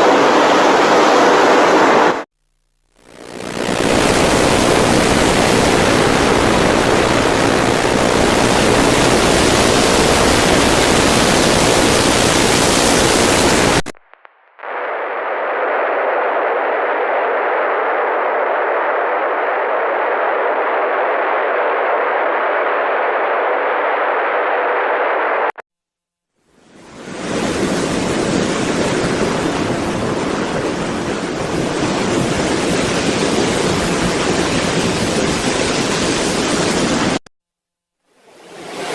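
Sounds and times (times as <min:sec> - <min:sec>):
static hiss: 0:02.3 - 0:25.6.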